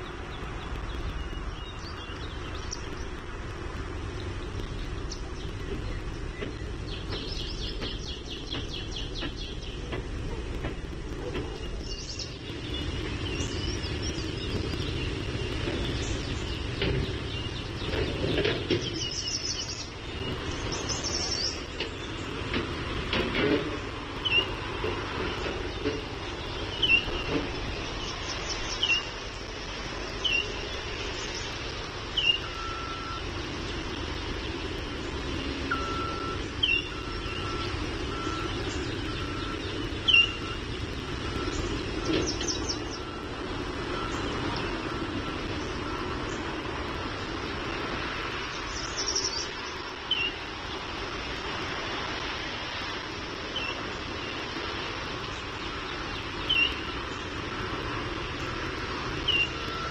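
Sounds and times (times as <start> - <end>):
bird chirping: 0.0 - 3.2, 4.4 - 10.0, 10.6 - 22.4, 25.4 - 29.2, 30.1 - 33.2, 35.7 - 43.3, 48.4 - 50.4, 55.3 - 57.4, 59.2 - 59.9
distant low rumble: 0.0 - 59.9
faint electronic beeping: 32.3 - 33.3, 35.7 - 41.8.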